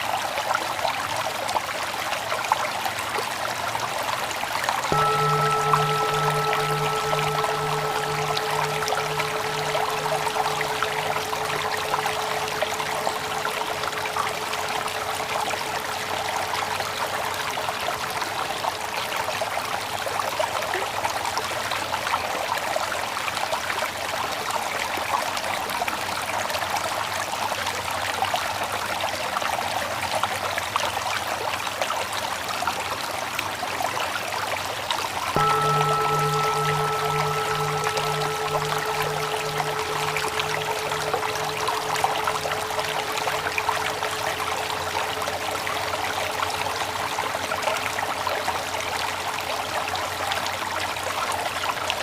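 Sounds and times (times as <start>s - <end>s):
ringing tone with low hum: 4.9s - 19.0s, 35.4s - 48.8s.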